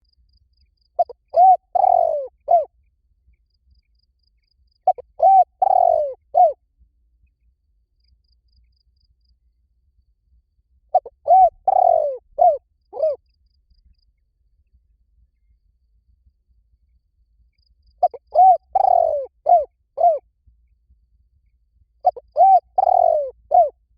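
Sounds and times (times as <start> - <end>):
dove cooing: 1.0 - 2.7, 4.8 - 6.6, 10.9 - 13.2, 18.0 - 20.3, 22.0 - 23.8.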